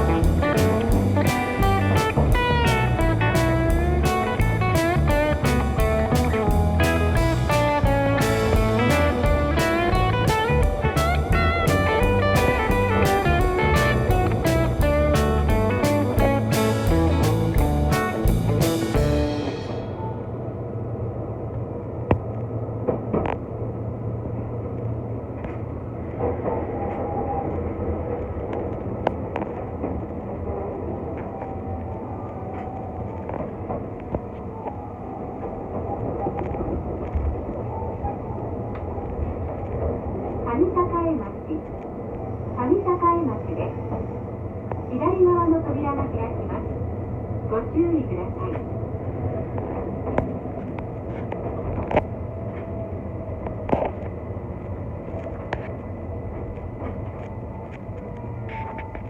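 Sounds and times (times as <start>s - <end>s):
bass and drum beat: 0.0s - 19.8s
blues electric guitar lead: 0.0s - 20.2s
electric train rumbling: 0.0s - 59.0s.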